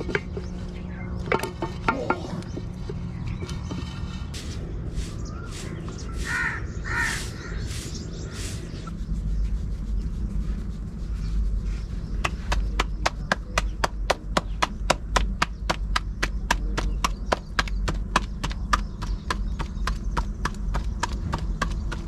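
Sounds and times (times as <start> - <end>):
low rumble: 0.0 - 21.8
crow cawing: 6.2 - 7.6
hooves clip-clopping: 12.2 - 22.0.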